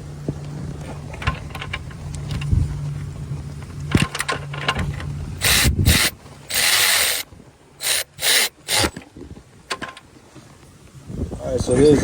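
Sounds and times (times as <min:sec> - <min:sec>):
pressurized jet hissing: 0:05.4 - 0:07.2, 0:07.8 - 0:08.9
sharp clicks and knocks: 0:05.4 - 0:07.2, 0:07.8 - 0:09.0.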